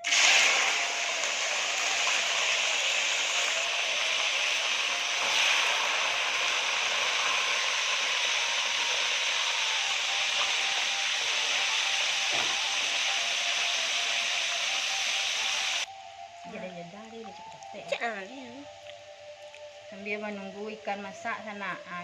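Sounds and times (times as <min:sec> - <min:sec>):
fish sizzling in hot oil: 0:00.0 - 0:15.9.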